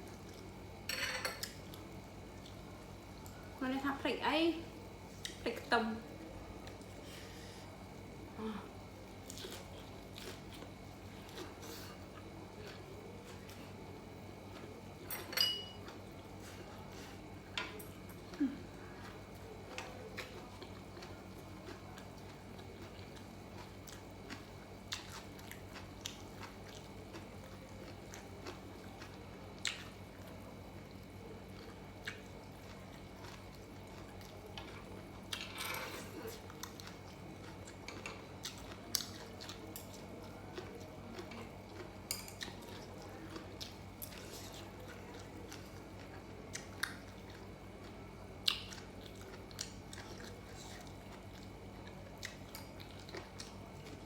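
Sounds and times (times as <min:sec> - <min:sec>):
faint steady hum: 0:00.0 - 0:54.0
person chewing and biting: 0:19.9 - 0:30.0.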